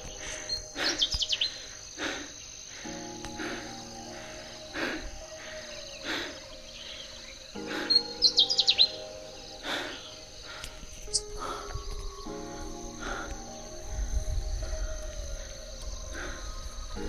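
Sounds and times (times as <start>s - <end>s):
high-pitched insect drone: 0.0s - 17.0s
warbler singing high notes: 0.0s - 17.0s.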